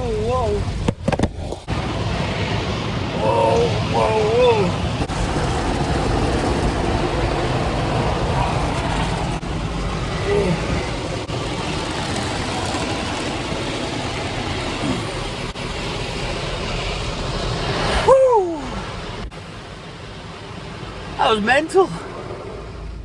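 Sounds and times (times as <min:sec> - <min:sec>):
car wash brushes scrubbing: 0:00.2 - 0:18.1
person crying whoa: 0:03.2 - 0:04.8, 0:10.3 - 0:10.8, 0:17.9 - 0:19.0.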